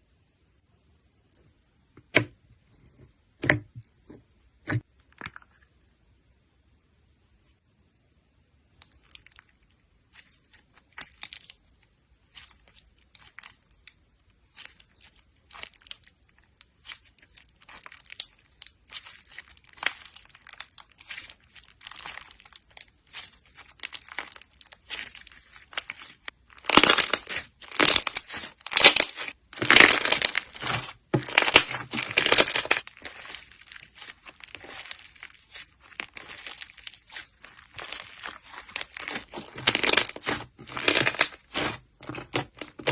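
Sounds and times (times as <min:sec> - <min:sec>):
slime crackling and popping: 0:08.7 - 0:42.9.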